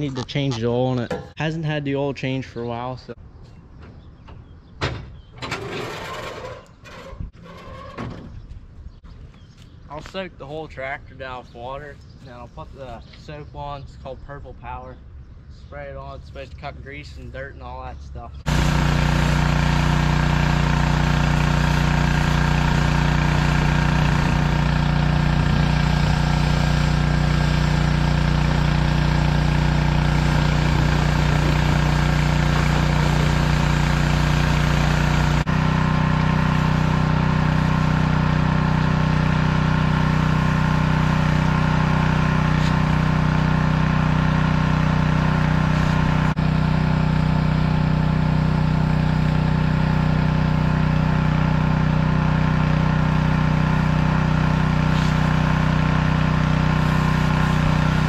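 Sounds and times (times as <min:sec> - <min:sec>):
pressure washer engine drone: 0:17.7 - 0:58.0.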